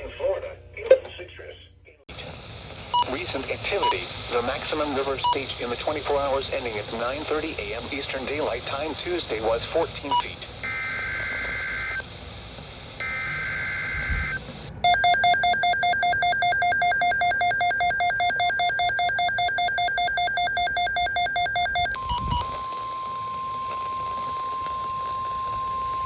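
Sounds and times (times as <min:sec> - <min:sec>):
pulsing two-tone attention signal: 0:14.9 - 0:26.0.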